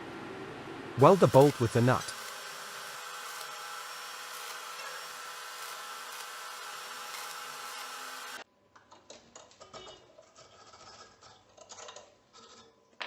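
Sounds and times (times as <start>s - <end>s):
welding arc buzzing and hissing: 1.0s - 8.4s.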